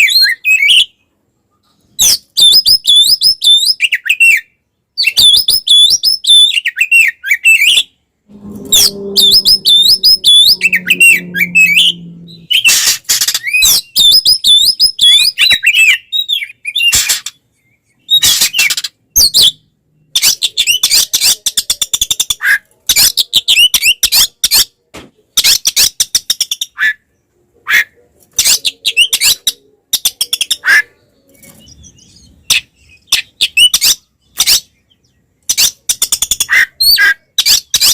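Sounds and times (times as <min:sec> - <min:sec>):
low steady tone: 0:08.3 - 0:12.6.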